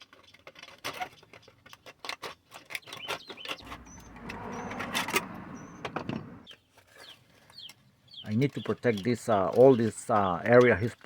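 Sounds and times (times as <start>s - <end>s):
bird chirps: 2.8s - 8.7s.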